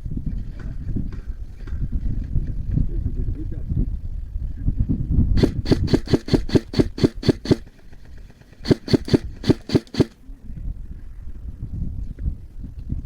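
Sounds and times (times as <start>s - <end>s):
airsoft gun shots: 5.4s - 7.7s, 8.6s - 10.2s.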